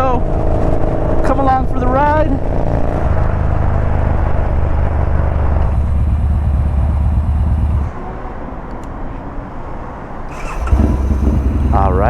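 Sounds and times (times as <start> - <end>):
motorcycle engine rumbling: 0.0 - 8.0, 10.3 - 12.0.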